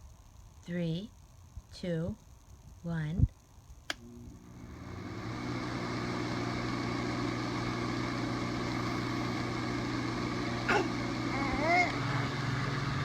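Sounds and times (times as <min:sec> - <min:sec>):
motor humming: 0:04.0 - 0:13.0.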